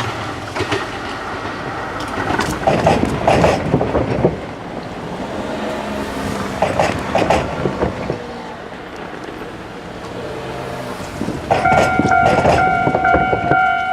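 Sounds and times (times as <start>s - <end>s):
train wheels clicking over rail joints: 0.0s - 13.9s
loud steady multi-pitched tone: 11.5s - 13.9s.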